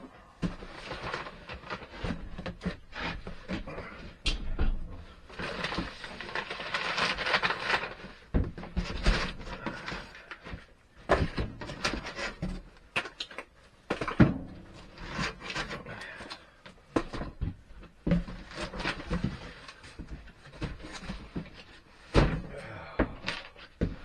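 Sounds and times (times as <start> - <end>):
packaging rustling: 0.4 - 3.8, 5.1 - 22.0.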